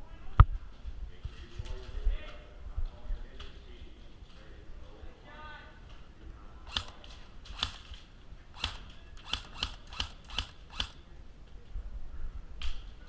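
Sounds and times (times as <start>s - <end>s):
airsoft gun shots: 6.7s - 11.0s.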